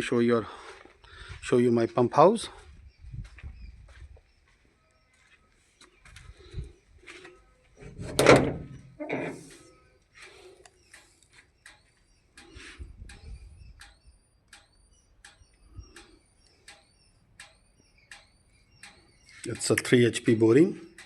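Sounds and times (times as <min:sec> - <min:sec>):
door scraping open: 0:07.8 - 0:09.7
sharp even ticks: 0:10.2 - 0:21.0.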